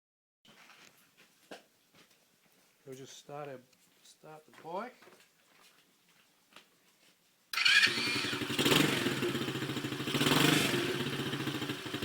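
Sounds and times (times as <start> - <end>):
electric starter cranking: 7.6 - 9.0
motorbike engine running: 7.6 - 12.0.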